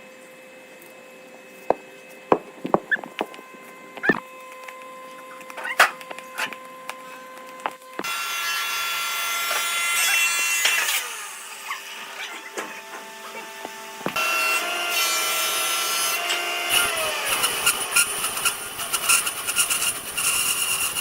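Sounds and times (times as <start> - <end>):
knocks and taps on wood: 1.7 - 4.2
woodworking tool cutting wood: 2.3 - 4.2, 7.9 - 21.0.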